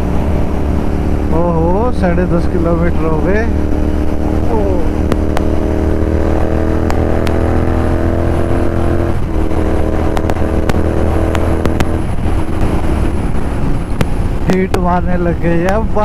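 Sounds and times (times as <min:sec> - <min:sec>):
motorcycle engine cruising: 0:00.0 - 0:16.0
sharp ticks: 0:06.8 - 0:07.7, 0:10.1 - 0:12.8.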